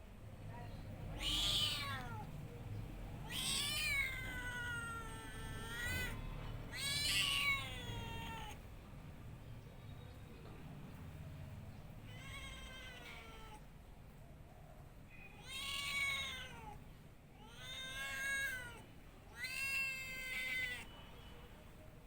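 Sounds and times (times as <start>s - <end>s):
cat meowing: 1.1s - 2.3s, 3.2s - 8.6s, 12.0s - 13.6s, 15.3s - 16.8s, 17.4s - 20.9s.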